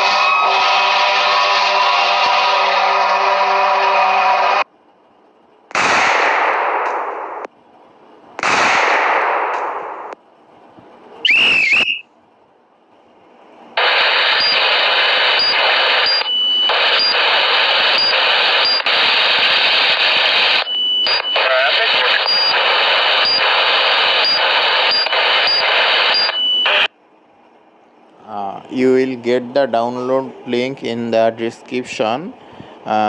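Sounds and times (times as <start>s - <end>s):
warbling radio chirp: 11.2s - 12.0s, 13.8s - 26.9s
loud noise bursts: 13.8s - 26.9s
radio static hiss: 13.8s - 26.9s.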